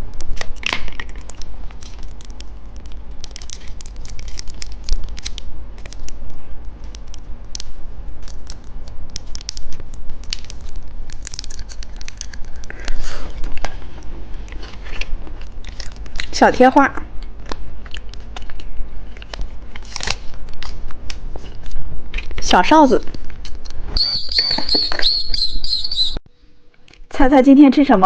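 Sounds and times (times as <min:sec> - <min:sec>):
plastic packaging crackling: 0:00.0 - 0:16.4, 0:17.3 - 0:22.5
hard candy crackling: 0:00.0 - 0:26.1.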